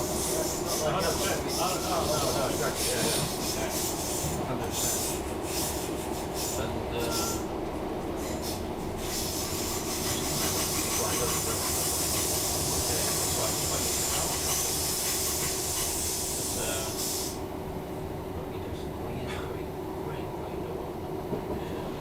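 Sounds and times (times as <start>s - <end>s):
train hum: 0.0s - 22.0s
train rumble: 0.0s - 22.0s
loud hiss: 11.6s - 17.4s.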